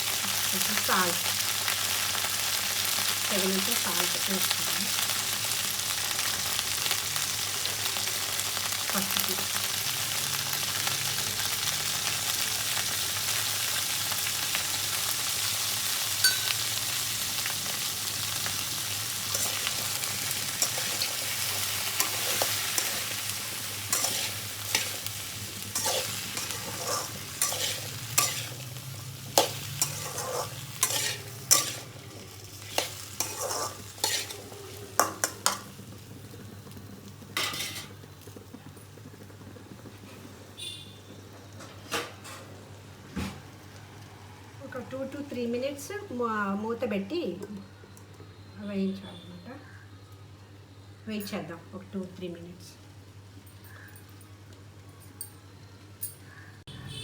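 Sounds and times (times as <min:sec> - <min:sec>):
okra sizzling in hot oil: 0:00.0 - 0:54.9
spatula scraping a pan: 0:19.2 - 0:23.3, 0:23.9 - 0:28.8, 0:29.4 - 0:35.6, 0:37.4 - 0:37.9.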